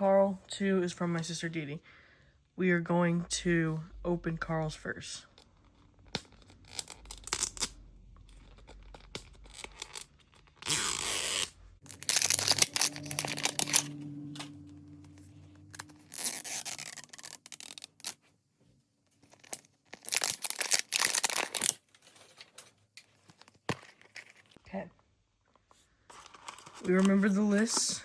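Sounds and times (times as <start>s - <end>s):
gift packaging tearing: 6.2s - 14.7s, 15.6s - 18.2s, 19.2s - 21.9s.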